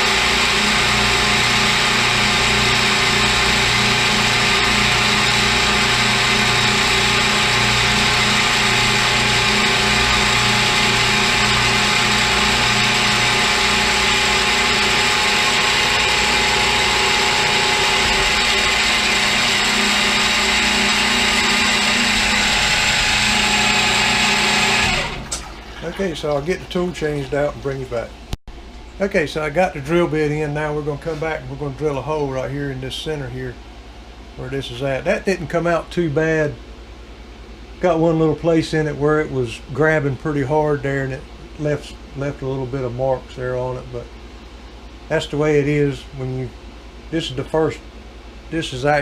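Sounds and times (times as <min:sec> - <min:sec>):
milling machine cutting: 0:00.0 - 0:26.4.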